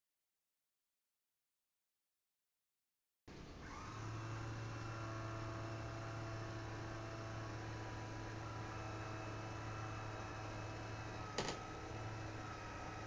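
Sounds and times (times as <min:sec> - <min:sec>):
motor humming with faint whine: 0:03.3 - 0:13.0.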